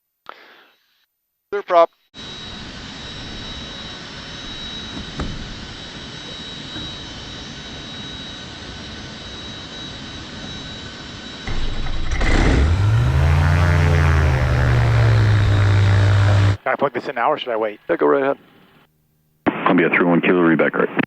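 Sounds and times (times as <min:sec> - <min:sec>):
light aircraft engine droning: 0:02.2 - 0:16.6.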